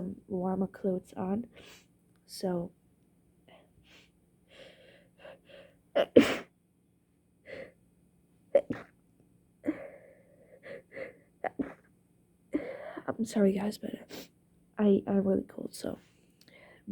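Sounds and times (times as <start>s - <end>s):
person sneezing: 6.0s - 6.5s, 8.6s - 8.9s.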